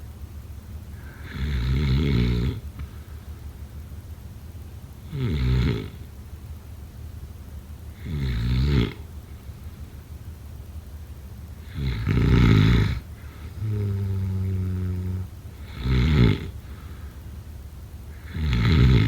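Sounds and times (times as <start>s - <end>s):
humming out-breath: 0.8s - 4.1s, 11.5s - 19.0s
person snoring: 1.0s - 2.6s, 5.1s - 6.0s, 8.0s - 9.0s, 11.7s - 16.7s, 18.2s - 19.0s.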